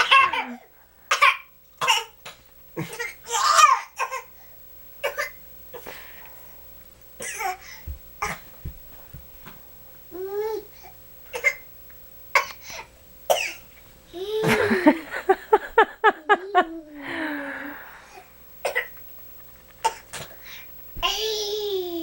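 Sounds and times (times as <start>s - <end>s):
playful fake coughs: 0.0s - 2.2s, 5.0s - 5.4s, 11.3s - 11.6s, 13.3s - 13.6s, 18.6s - 18.9s.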